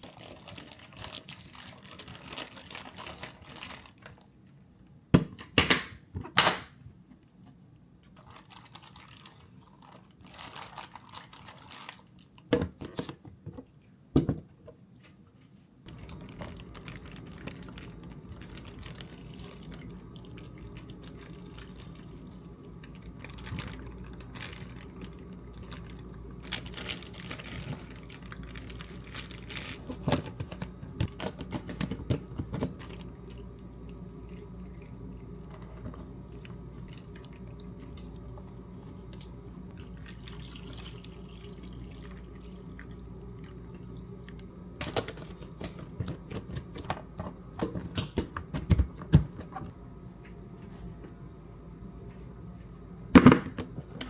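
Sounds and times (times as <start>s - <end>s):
steady low hum: 15.0s - 54.0s.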